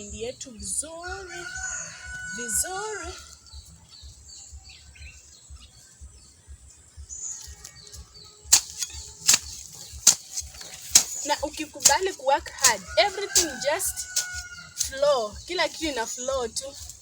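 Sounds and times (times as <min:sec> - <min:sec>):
small birds chirping: 0:00.0 - 0:17.0
hand hoe striking soil: 0:07.4 - 0:17.0.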